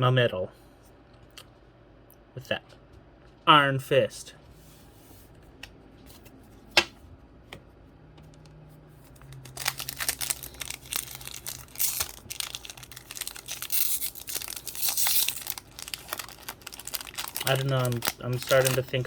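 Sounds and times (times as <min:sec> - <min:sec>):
foil wrapper crinkling and tearing: 0:09.2 - 0:19.0.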